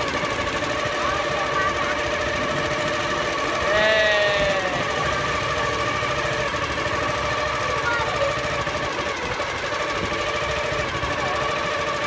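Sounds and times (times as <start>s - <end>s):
boat engine running: 0.0s - 12.0s.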